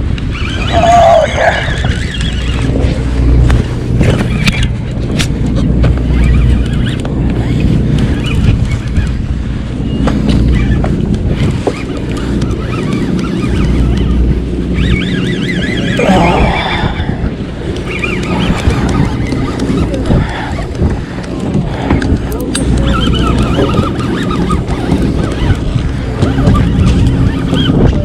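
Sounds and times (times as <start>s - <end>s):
boat engine running: 0.0s - 28.0s
wind buffeting microphone: 0.0s - 28.0s.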